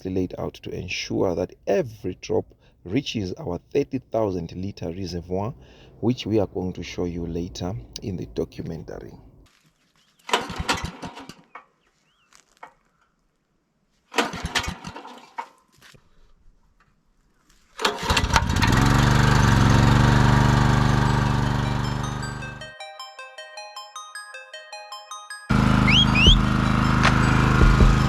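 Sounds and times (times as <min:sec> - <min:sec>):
generator engine cranking: 0:10.3 - 0:11.6, 0:14.1 - 0:15.4, 0:17.8 - 0:22.6, 0:25.5 - 0:28.0
generator engine running: 0:18.0 - 0:22.6, 0:25.5 - 0:28.0.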